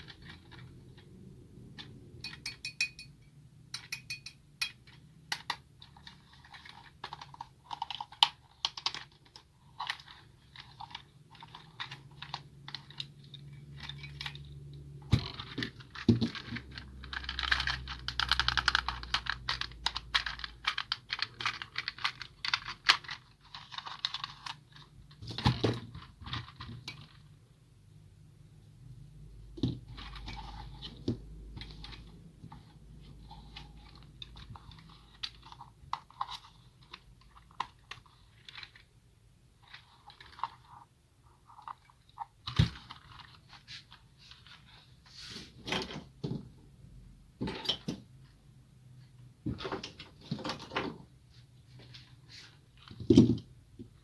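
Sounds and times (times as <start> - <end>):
toy clicking and tapping: 2.2 - 5.6.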